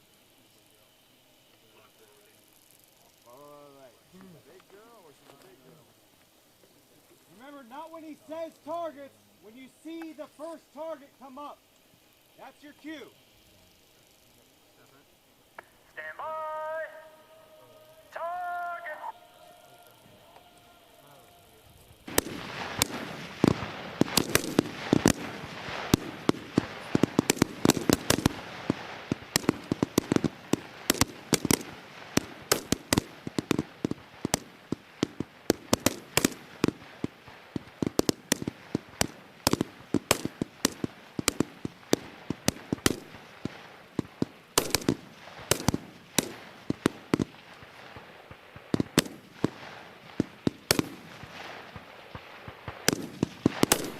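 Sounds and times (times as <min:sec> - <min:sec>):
rifle shots cracking: 0:22.0 - 0:53.9.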